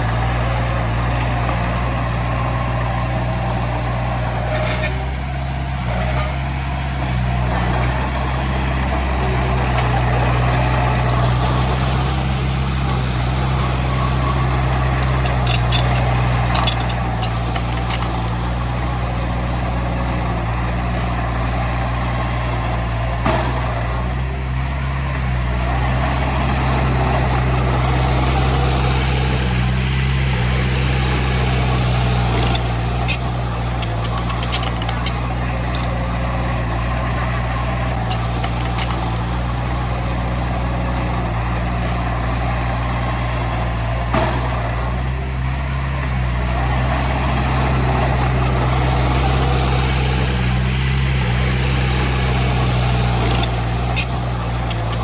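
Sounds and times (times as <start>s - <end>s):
heavy machinery diesel engine running: 0.0s - 55.0s
metallic clicks and rattles: 12.8s - 18.9s, 27.2s - 39.8s, 48.0s - 55.0s.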